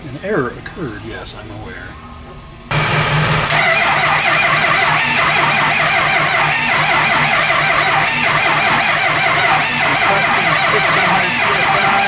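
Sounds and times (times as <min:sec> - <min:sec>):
starter cranking diesel engine: 0:02.7 - 0:12.0.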